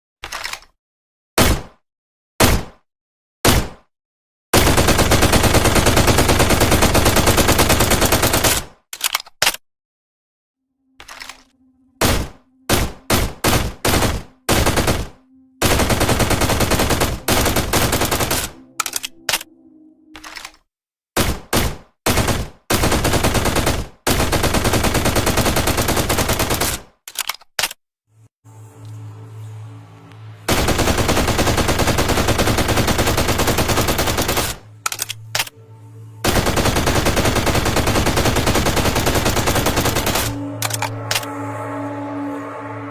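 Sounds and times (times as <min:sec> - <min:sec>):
automatic gunfire bursts: 0:04.6 - 0:08.6, 0:12.1 - 0:18.6, 0:21.2 - 0:26.8, 0:36.3 - 0:40.4.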